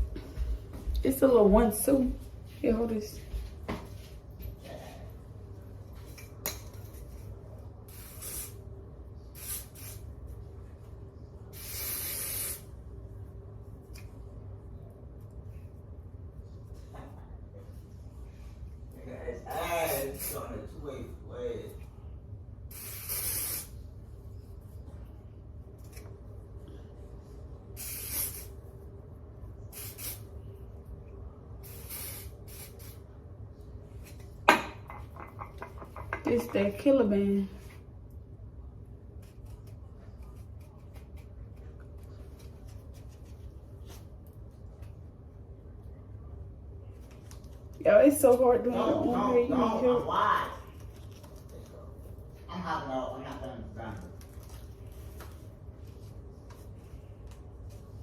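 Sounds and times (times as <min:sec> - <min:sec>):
spray hissing bursts: 0:07.9 - 0:08.6, 0:09.3 - 0:10.1, 0:11.5 - 0:12.6, 0:22.7 - 0:23.8, 0:27.8 - 0:28.5, 0:29.7 - 0:30.2, 0:31.6 - 0:33.0.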